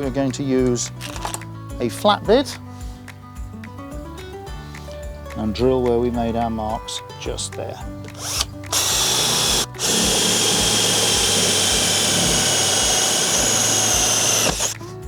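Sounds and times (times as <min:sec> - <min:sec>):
power drill boring wood: 0:08.1 - 0:14.8.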